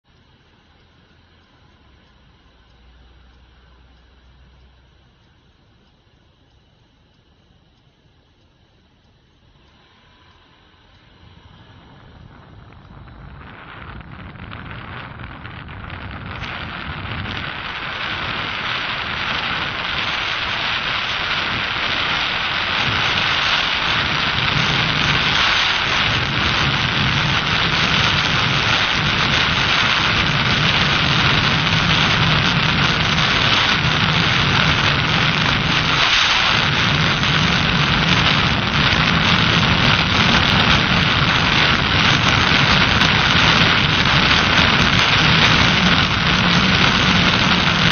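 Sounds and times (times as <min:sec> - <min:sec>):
wind noise on microphone: 0:11.0 - 0:47.9.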